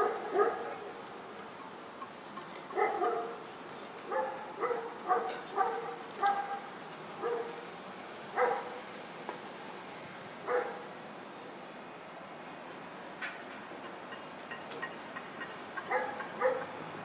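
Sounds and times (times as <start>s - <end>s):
dog barking: 0.0s - 0.9s, 2.7s - 3.4s, 4.1s - 7.6s, 8.3s - 8.8s, 10.4s - 10.9s, 15.9s - 16.8s.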